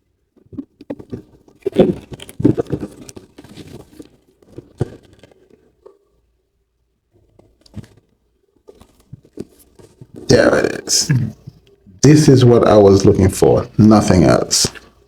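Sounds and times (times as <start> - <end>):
packaging crinkling and rustling: 0.5 - 6.0.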